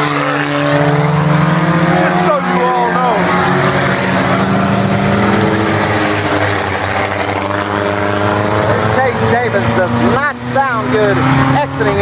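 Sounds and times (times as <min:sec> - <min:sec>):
race car engines at speed: 0:00.0 - 0:12.0.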